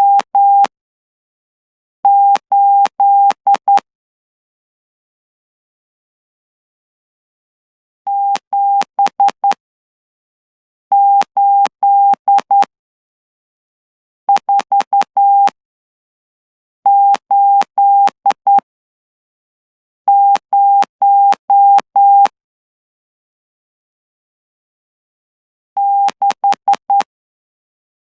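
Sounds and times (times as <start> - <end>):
morse code beeps: 11.0 - 12.7, 14.3 - 15.6, 16.9 - 18.6, 20.1 - 22.3, 25.8 - 27.1.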